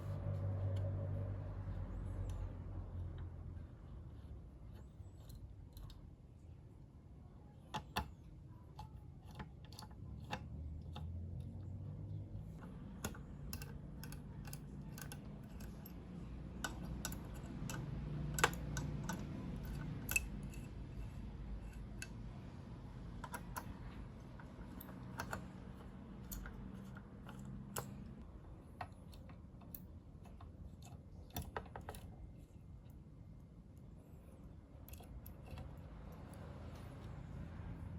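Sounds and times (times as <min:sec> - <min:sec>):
hand tools clicking and tapping: 0:12.6 - 0:22.3.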